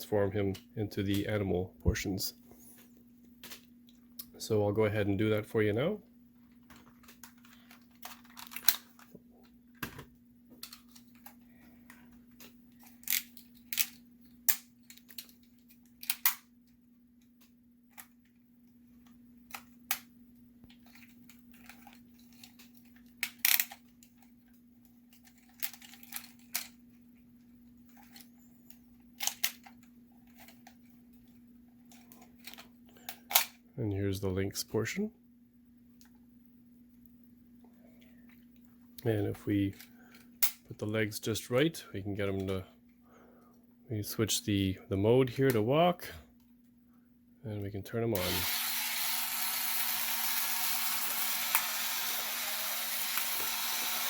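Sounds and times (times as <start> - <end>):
faint steady hum: 0.0 - 54.0
plastic toy parts clicking: 6.8 - 9.1, 12.4 - 16.4, 20.8 - 24.3, 25.1 - 26.8, 29.2 - 30.8.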